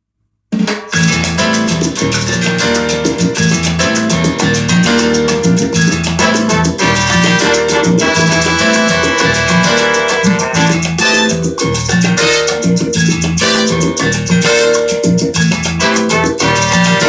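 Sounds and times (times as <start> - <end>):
upbeat music with bass and percussion: 0.6 - 17.0.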